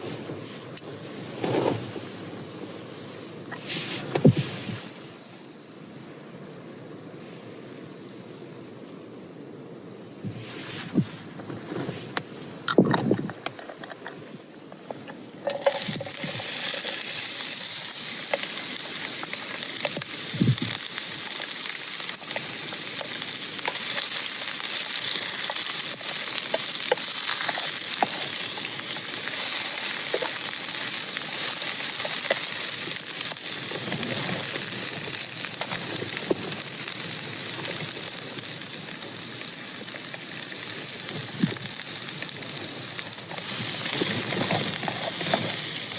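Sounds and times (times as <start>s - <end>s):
food sizzling in a pan: 15.5s - 45.9s.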